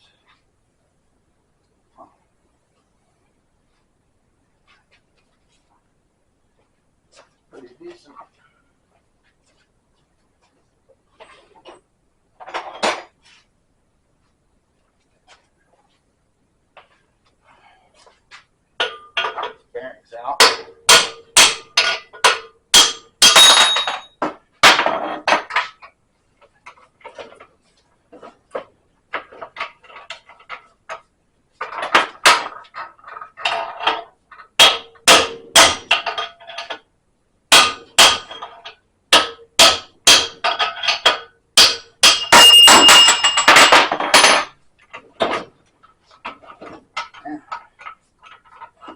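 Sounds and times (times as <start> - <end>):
hammer striking metal: 20.4 - 24.2, 34.6 - 36.3, 37.5 - 38.5, 39.1 - 44.5.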